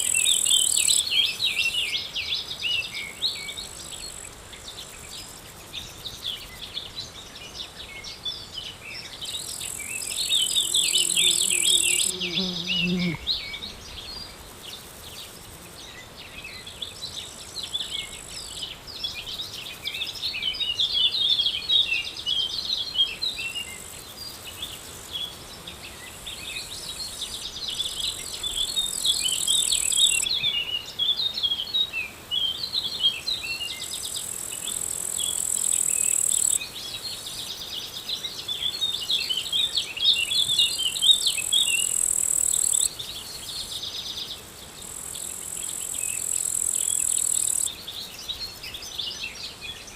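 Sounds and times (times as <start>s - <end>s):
insect high trill: 0.0s - 2.1s, 9.3s - 13.9s, 26.1s - 30.4s, 33.6s - 38.0s, 38.6s - 43.6s, 44.8s - 48.3s
small birds chirping: 0.0s - 49.9s.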